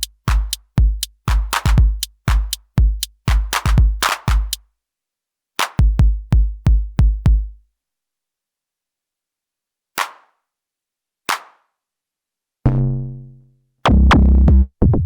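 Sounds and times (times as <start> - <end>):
synthesized kick drums: 0.0 - 4.6, 5.8 - 7.6.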